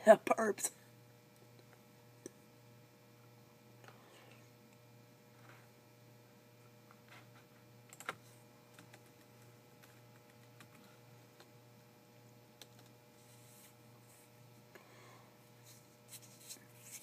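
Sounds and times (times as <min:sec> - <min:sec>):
steady low hum: 0:00.0 - 0:17.0
computer keyboard typing: 0:07.9 - 0:10.9, 0:12.6 - 0:12.9.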